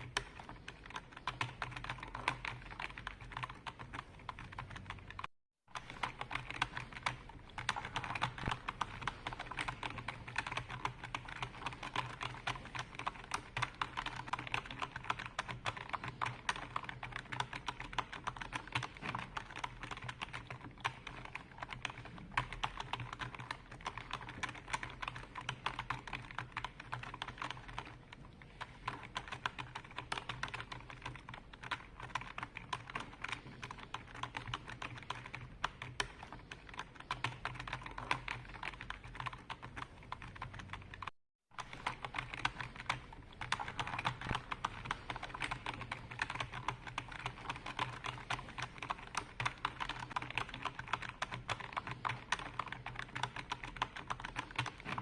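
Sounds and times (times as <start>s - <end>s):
computer keyboard typing: 0.0s - 55.0s.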